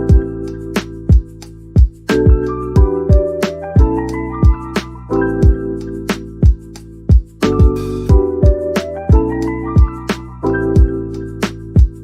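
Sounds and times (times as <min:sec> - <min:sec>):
sustained keyboard chords: 0:00.0 - 0:12.0
kick drum: 0:00.1 - 0:00.3, 0:01.1 - 0:04.7, 0:05.4 - 0:05.6, 0:06.4 - 0:10.0, 0:10.8 - 0:11.0, 0:11.8 - 0:12.0
ticking hi-hat: 0:05.8 - 0:10.2.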